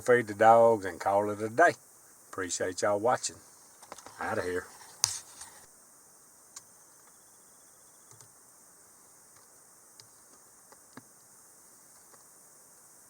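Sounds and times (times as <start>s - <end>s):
faint steady hiss: 0.0s - 13.0s
soft clicks: 8.1s - 8.3s.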